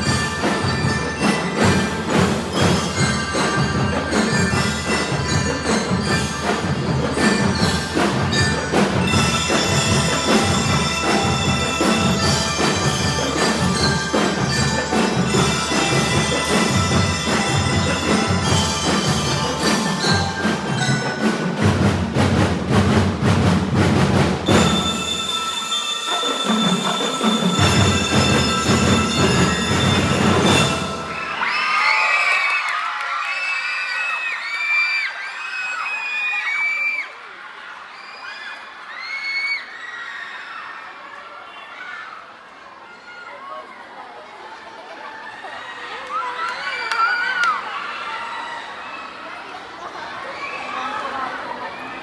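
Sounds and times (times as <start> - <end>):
bell lyres ringing melody: 0.0 - 22.3, 24.4 - 31.5
marching drums beating: 0.0 - 31.6.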